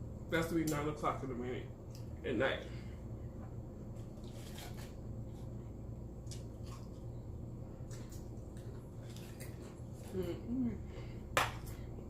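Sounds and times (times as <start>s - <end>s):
steady low hum: 0.0s - 12.0s
chewing and mouth sounds: 6.2s - 10.5s.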